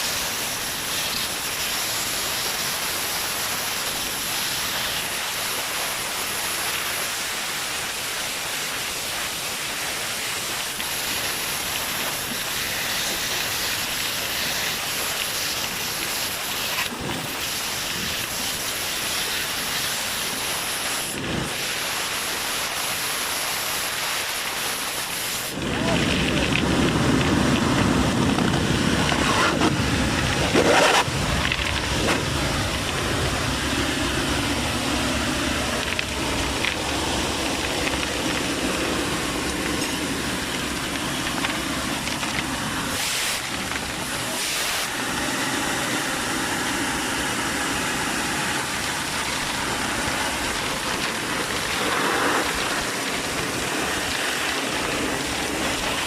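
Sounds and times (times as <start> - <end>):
vacuum excavator running: 24.6 - 56.0.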